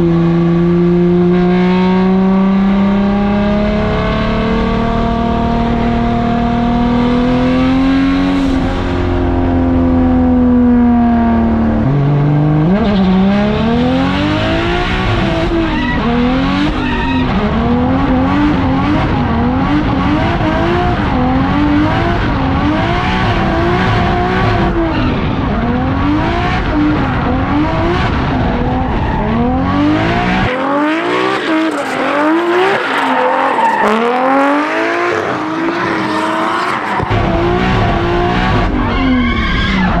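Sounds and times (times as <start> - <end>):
car engine revving: 0.0 - 40.0
tyre squeal: 15.5 - 17.4, 31.1 - 34.4.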